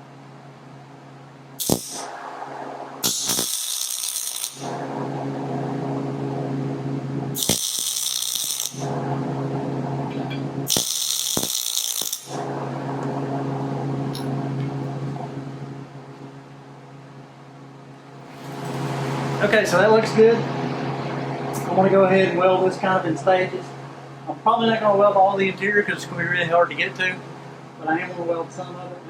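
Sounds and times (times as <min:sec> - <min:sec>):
welding arc crackling hiss: 0:01.6 - 0:02.2, 0:03.0 - 0:04.8, 0:07.4 - 0:08.9, 0:10.6 - 0:12.4
welder hum: 0:01.6 - 0:15.3.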